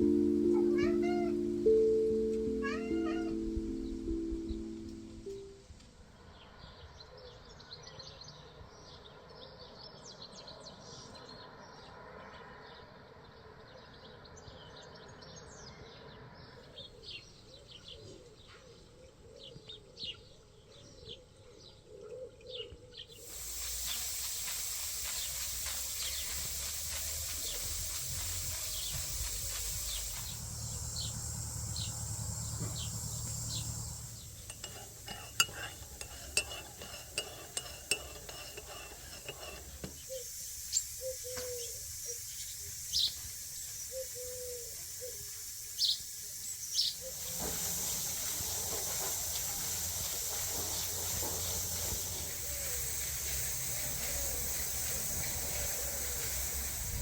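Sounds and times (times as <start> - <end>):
steady hiss: 0.0 - 5.9, 23.2 - 57.0
small birds chirping and singing: 25.0 - 57.0.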